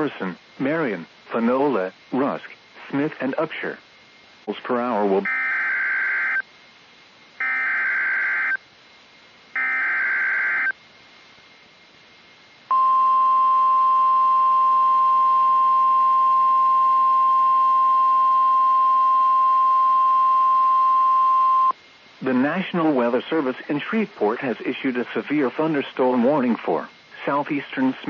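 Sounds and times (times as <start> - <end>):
steady single-pitch alarm tone: 5.2 - 6.4, 7.4 - 8.6, 9.6 - 10.8, 12.7 - 21.8.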